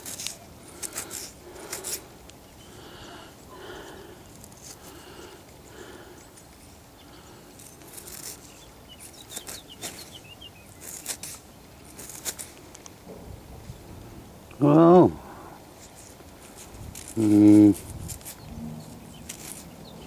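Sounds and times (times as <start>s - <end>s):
soil scraping: 7.6s - 12.8s, 15.8s - 20.0s.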